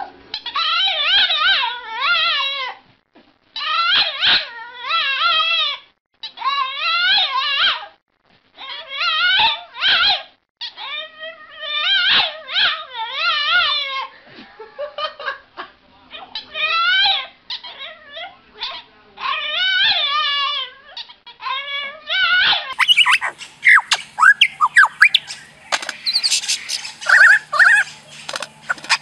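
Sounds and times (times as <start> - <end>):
dog whining and howling: 27.0 - 27.9.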